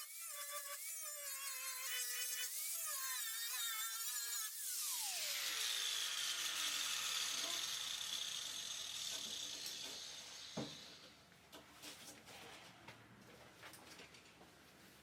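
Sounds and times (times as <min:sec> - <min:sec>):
power tool spinning down: 0:04.5 - 0:11.1.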